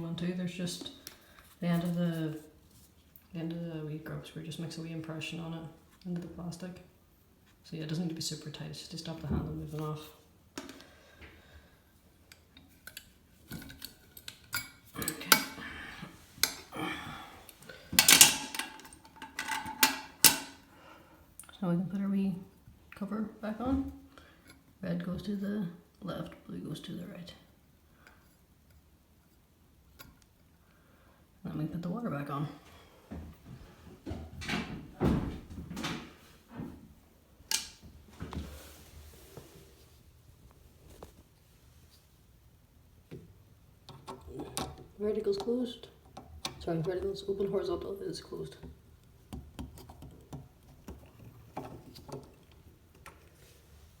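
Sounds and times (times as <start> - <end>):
small parts clicking and clattering: 17.9 - 20.7.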